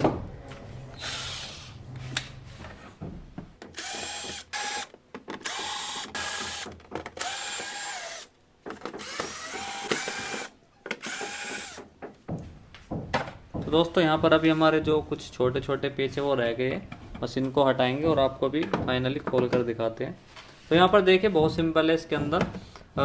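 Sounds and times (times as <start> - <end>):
power screwdriver motor whine: 3.8 - 8.3, 9.0 - 11.8.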